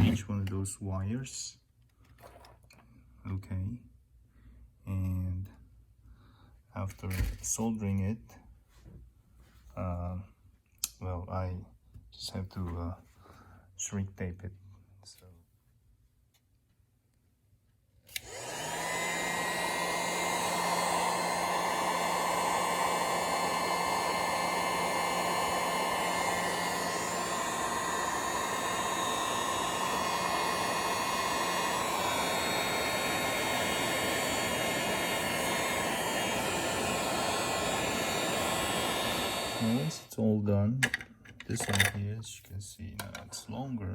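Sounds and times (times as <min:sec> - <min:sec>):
heat gun blowing: 0:18.1 - 0:40.1.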